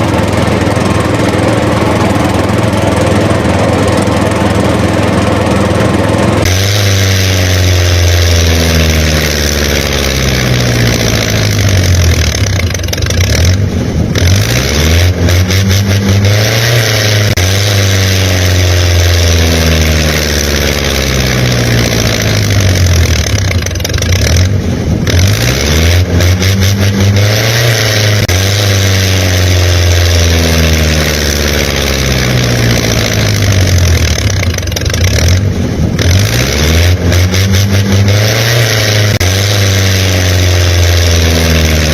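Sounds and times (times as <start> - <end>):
engine revving: 0.0 - 41.9.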